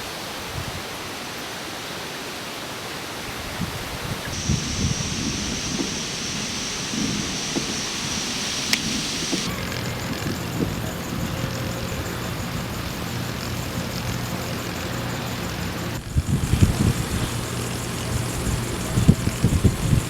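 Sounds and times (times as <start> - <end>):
rain hiss: 0.0 - 20.0
storm wind: 3.4 - 9.5
wind buffeting microphone: 3.4 - 11.4, 16.0 - 20.0
steady low hum: 4.4 - 19.3.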